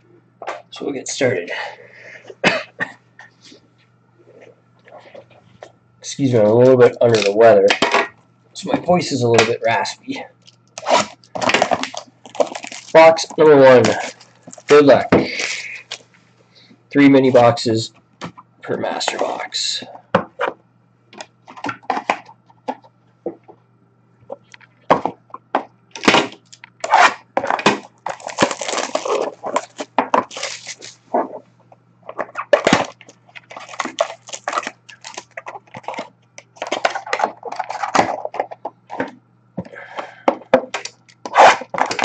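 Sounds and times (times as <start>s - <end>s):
wrapper crinkling and tearing: 10.4s - 16.0s, 26.0s - 31.3s, 32.1s - 38.4s.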